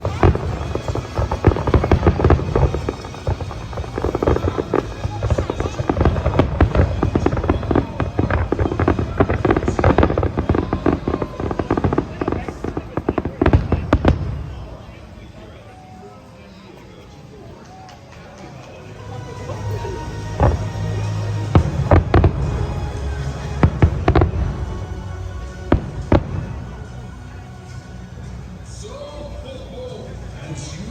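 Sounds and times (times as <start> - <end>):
fireworks bangs and crackling pops: 0.0 - 15.0, 17.6 - 27.0
music: 0.0 - 30.9.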